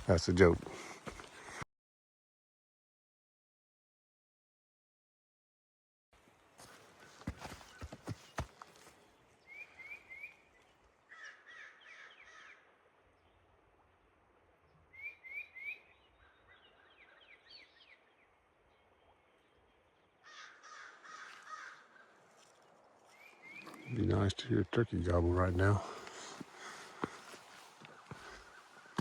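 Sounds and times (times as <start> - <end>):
crows cawing: 11.1 - 12.6, 20.2 - 22.4.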